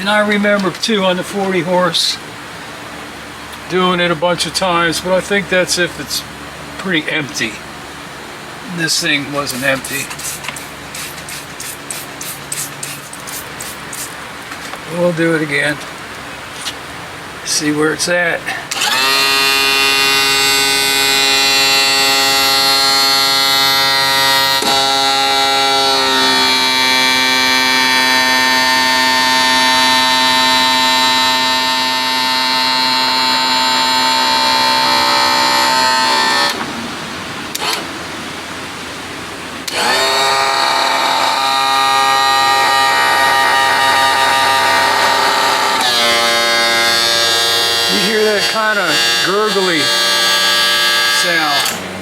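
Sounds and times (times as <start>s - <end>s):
electric pump motor whine: 18.7s - 36.7s, 37.5s - 37.9s, 39.6s - 52.0s.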